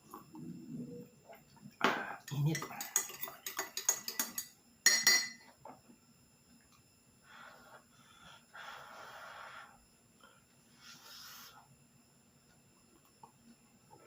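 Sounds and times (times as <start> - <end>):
spoon clinking against a cup: 2.2 - 5.4.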